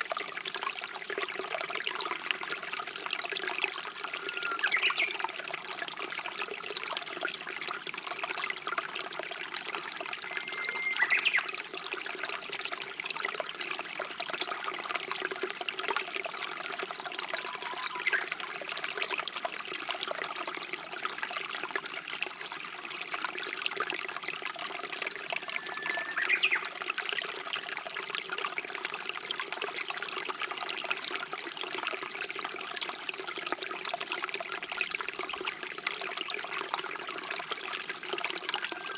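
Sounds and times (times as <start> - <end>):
stream trickling: 0.0 - 38.9
bird singing: 4.1 - 5.2, 10.2 - 11.5, 17.4 - 18.3, 25.5 - 26.7.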